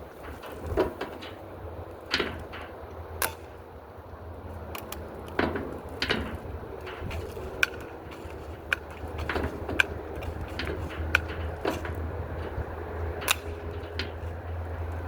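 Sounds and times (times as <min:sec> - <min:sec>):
air rifle clicks and knocks: 0:04.7 - 0:15.0.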